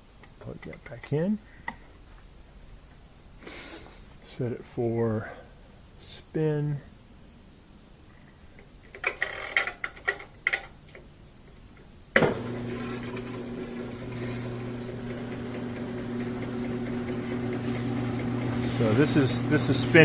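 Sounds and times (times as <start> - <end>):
motor starting thunk: 12.2 - 20.0
washer motor humming: 12.2 - 20.0.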